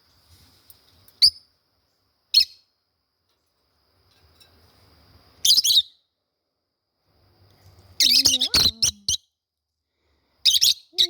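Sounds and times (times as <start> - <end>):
lovebirds chirping and chattering: 5.4 - 6.0, 7.6 - 9.4, 10.4 - 11.0.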